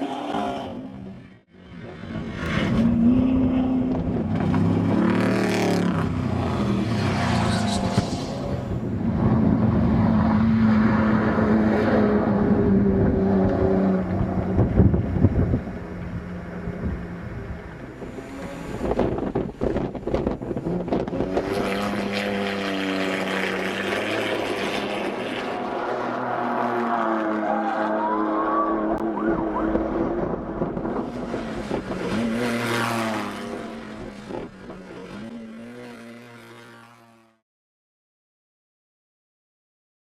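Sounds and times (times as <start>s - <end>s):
race truck engines passing: 0.0s - 37.4s.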